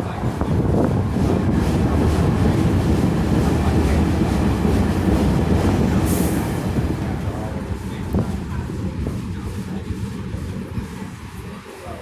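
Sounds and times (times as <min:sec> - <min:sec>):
train rumbling on rails: 0:00.0 - 0:12.0.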